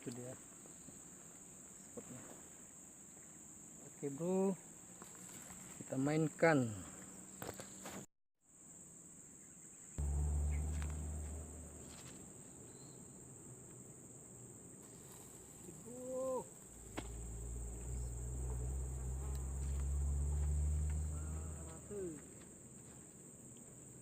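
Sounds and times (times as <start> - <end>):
insects droning: 0.0 - 24.0
low rumble: 10.0 - 12.3, 16.8 - 21.9.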